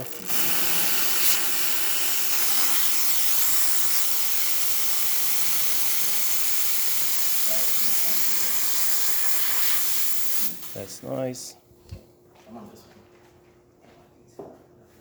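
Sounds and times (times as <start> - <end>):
steam wand hissing: 0.0 - 11.0.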